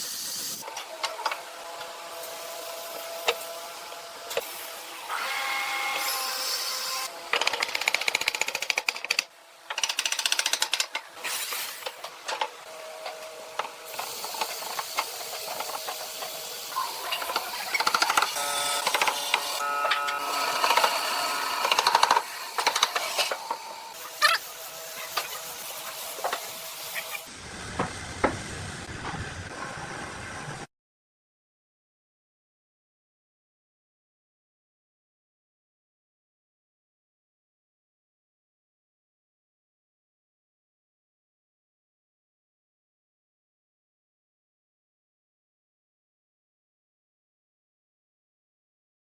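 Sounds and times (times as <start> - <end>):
small machine clicking and knocking: 7.3 - 11.1, 17.1 - 23.6.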